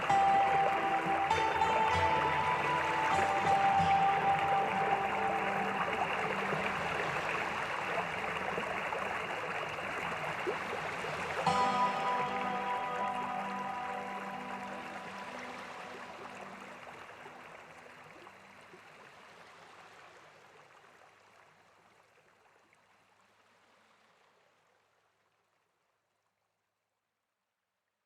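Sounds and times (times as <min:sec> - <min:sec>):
background music: 0:00.0 - 0:08.6, 0:11.4 - 0:17.0
flowing water rushing: 0:00.0 - 0:24.6.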